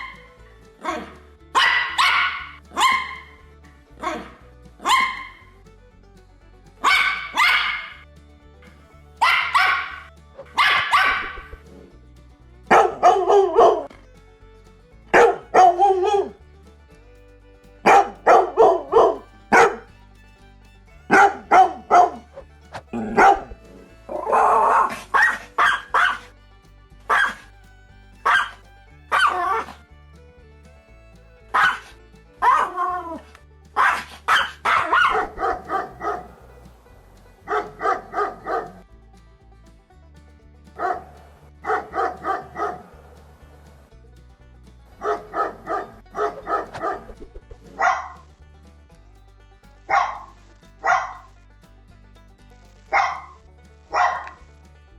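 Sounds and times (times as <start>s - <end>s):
background music with bass: 0.0s - 54.9s
dog barking: 1.6s - 3.2s, 4.0s - 5.3s, 6.8s - 8.0s, 9.2s - 10.0s, 10.6s - 11.5s, 12.7s - 13.9s, 15.2s - 16.3s, 17.9s - 19.8s, 21.1s - 22.2s, 23.0s - 23.6s, 25.2s - 26.2s, 27.1s - 27.4s, 28.3s - 28.5s, 31.6s - 31.8s, 33.8s - 36.3s, 37.5s - 38.8s, 40.8s - 42.9s, 45.0s - 47.1s, 47.8s - 48.2s, 49.9s - 51.3s, 52.9s - 54.4s.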